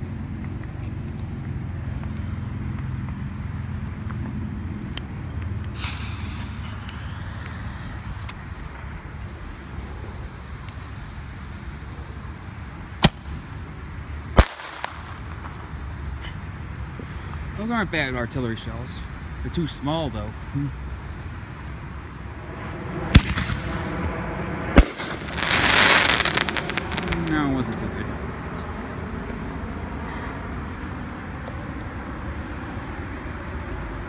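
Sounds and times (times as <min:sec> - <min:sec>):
steady low rumble: 0:00.0 - 0:19.5, 0:20.1 - 0:34.0
firework hissing rush: 0:05.7 - 0:12.4, 0:14.4 - 0:15.4, 0:24.7 - 0:27.6
firework bangs: 0:13.0 - 0:13.5, 0:14.4 - 0:15.6, 0:22.9 - 0:27.6.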